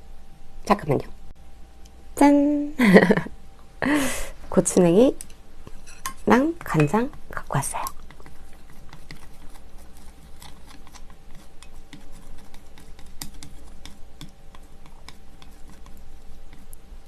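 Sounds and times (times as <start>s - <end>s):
chopsticks and spoon tapping dishes: 5.2s - 7.2s.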